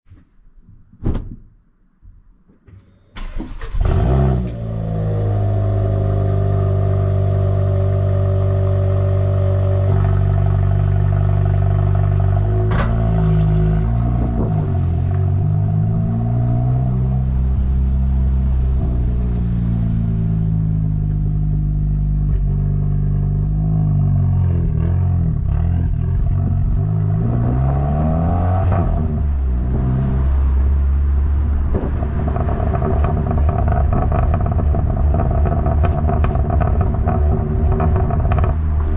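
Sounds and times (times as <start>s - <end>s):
car engine starting and idling: 2.8s - 38.9s
exhaust crack: 3.2s - 38.9s.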